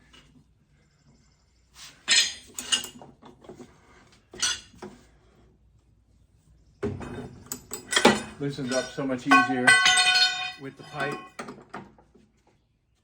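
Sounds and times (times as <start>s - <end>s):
metal pipe and wrench clanking: 7.5s - 11.6s.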